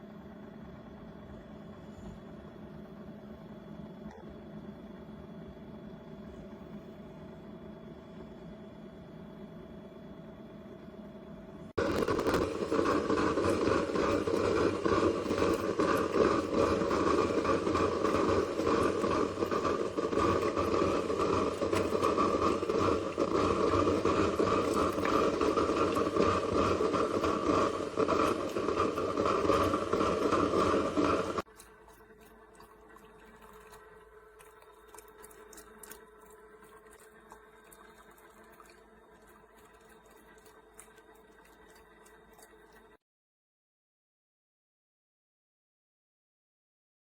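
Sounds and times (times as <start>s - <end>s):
coffee grinder grinding beans: 11.8s - 33.8s.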